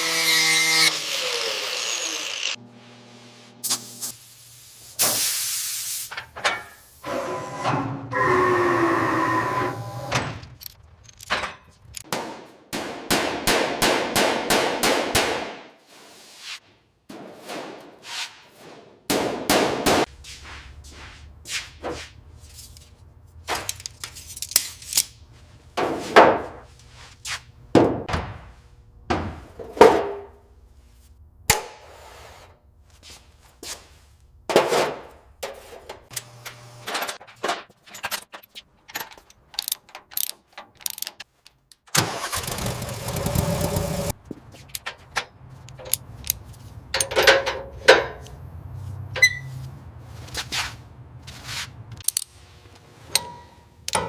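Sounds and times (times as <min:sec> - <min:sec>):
metallic clanks and knocks: 0:46.9 - 0:48.3.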